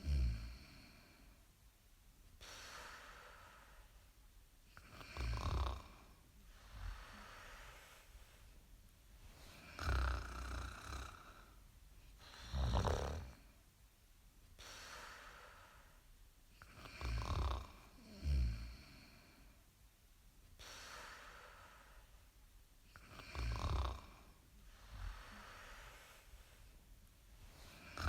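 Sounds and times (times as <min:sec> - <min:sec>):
quiet breathing: 0:00.0 - 0:01.7, 0:02.3 - 0:13.8, 0:14.4 - 0:28.0
person snoring: 0:04.8 - 0:08.0, 0:09.5 - 0:11.6, 0:12.2 - 0:13.4, 0:16.6 - 0:19.2, 0:23.0 - 0:24.2, 0:27.7 - 0:28.0.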